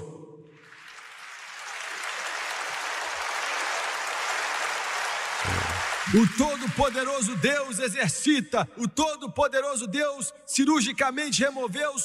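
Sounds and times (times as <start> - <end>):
congregation applauding: 0.6 - 7.8.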